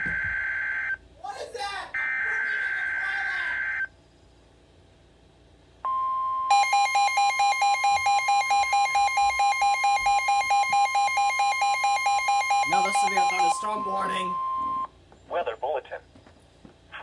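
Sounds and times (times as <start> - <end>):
steady electronic alert tone: 6.5 - 14.9.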